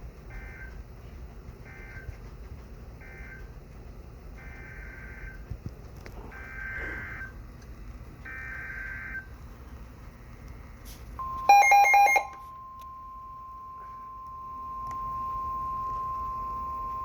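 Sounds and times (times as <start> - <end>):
steady warning alarm tone: 0.2 - 1.0, 1.6 - 2.2, 3.0 - 5.4, 6.3 - 7.4, 8.2 - 9.4, 11.2 - 17.0.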